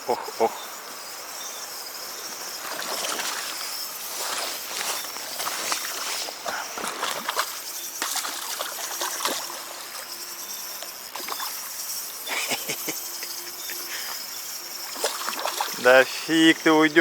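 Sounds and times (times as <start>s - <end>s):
water trickling and lapping: 1.8s - 12.6s, 13.2s - 17.0s
small splashes: 2.6s - 10.1s, 11.1s - 11.7s, 14.8s - 16.1s.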